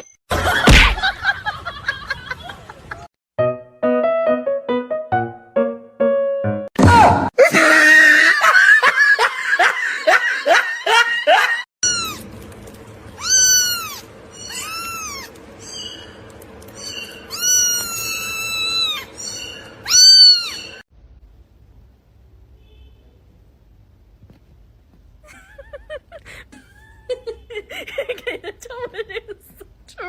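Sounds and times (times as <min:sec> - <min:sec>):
cat meowing: 0:11.8 - 0:12.2, 0:13.2 - 0:15.4, 0:16.9 - 0:20.8.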